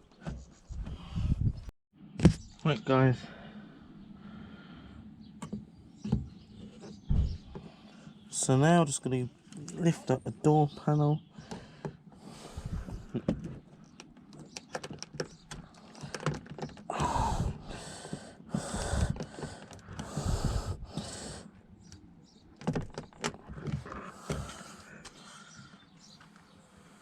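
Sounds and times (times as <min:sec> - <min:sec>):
plastic clicks and knocks: 0:13.2 - 0:17.0.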